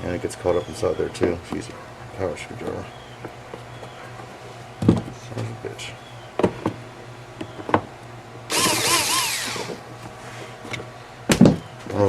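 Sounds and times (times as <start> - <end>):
power screwdriver motor whining: 8.5 - 9.8.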